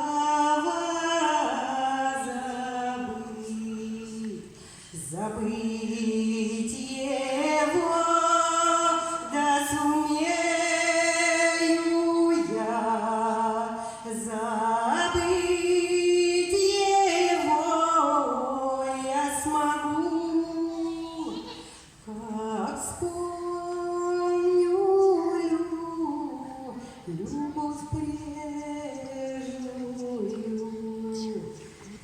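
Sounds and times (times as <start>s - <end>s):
women singing unaccompanied: 0.0s - 32.0s.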